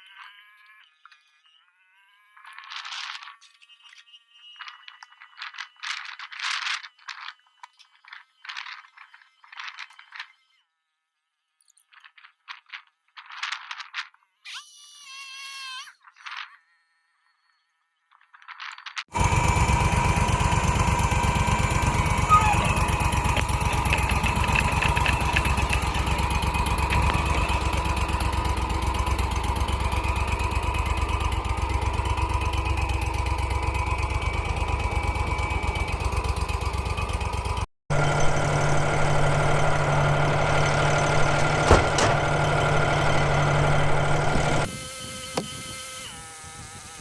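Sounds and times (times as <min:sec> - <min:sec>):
engine hum with low tone: 0:19.1 - 0:46.9
small engine throbbing: 0:19.1 - 0:47.0.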